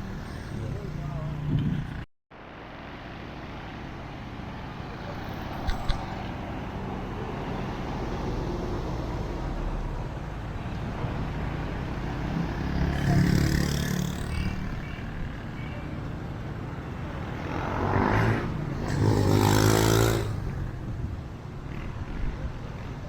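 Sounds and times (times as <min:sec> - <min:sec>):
passing vehicles: 0:00.0 - 0:23.0
vehicle engine passing by: 0:11.1 - 0:14.8, 0:17.2 - 0:20.8.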